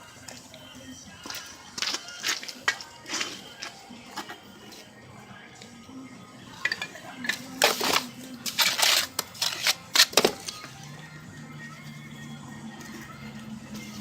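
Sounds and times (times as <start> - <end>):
stone pieces clinking and scraping: 1.2 - 4.4, 6.6 - 10.6.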